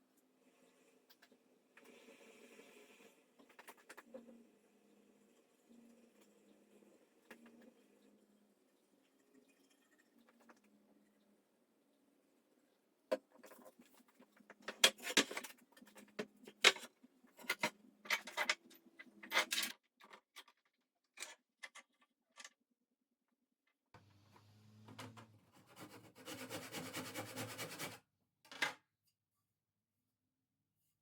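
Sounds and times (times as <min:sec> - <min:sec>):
knocks and scrapes of tools: 0:13.1 - 0:20.2.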